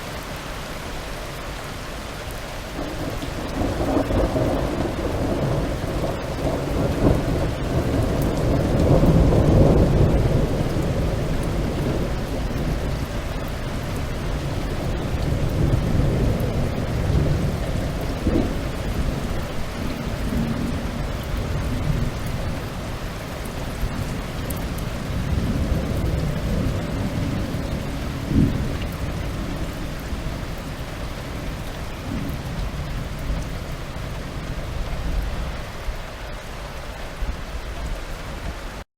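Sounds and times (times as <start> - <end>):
heavy rain pouring: 0.0 - 38.8
rolling thunder: 2.8 - 35.6
sharp thunderclap: 15.2 - 20.9, 25.1 - 29.7.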